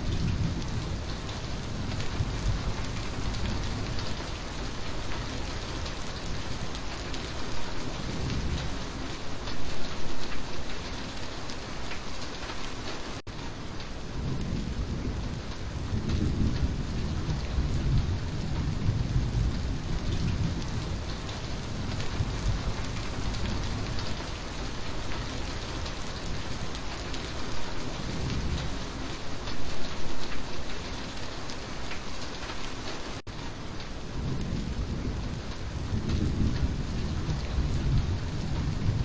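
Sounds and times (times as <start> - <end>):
low roll of thunder: 0.0 - 9.2, 14.1 - 29.2, 34.0 - 39.0
steady rain falling: 0.0 - 39.0.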